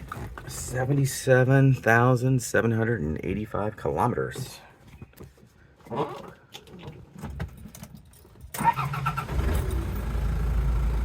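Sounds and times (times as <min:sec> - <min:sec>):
diesel engine starting and idling: 0:08.5 - 0:11.0.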